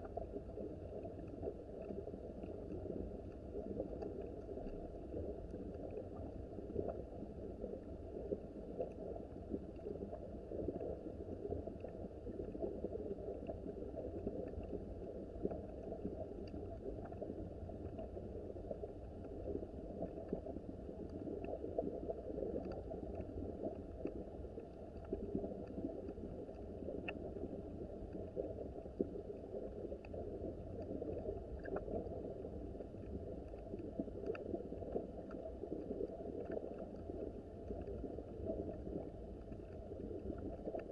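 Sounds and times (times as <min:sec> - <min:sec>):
faint clicks: 0:11.6 - 0:40.9.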